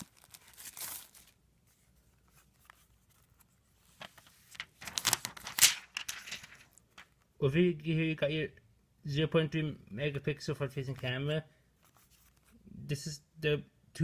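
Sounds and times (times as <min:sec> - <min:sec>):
packaging rustling and crinkling: 0:00.0 - 0:07.1.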